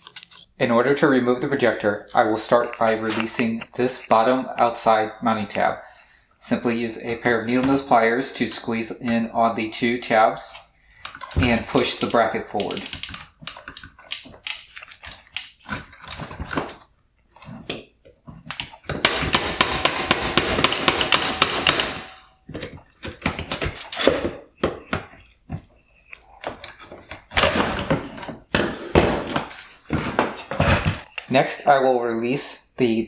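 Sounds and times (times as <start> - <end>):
plastic clicks and rattles: 11.0 - 16.8.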